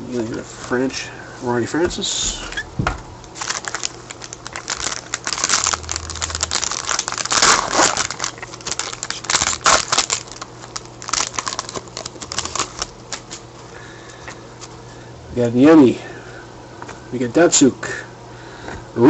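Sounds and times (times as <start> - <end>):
foil wrapper crinkling: 3.3 - 13.6.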